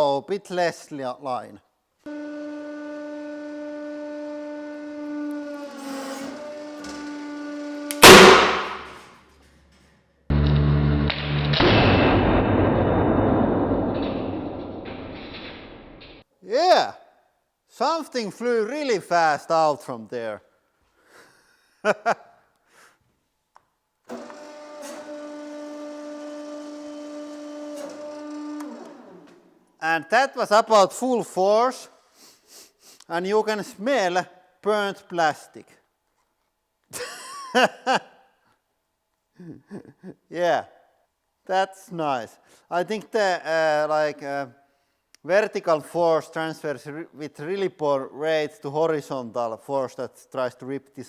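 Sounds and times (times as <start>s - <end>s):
hydraulic press droning hum: 2.9s - 9.1s
loud sharp bang: 7.9s - 9.2s, 11.2s - 15.4s.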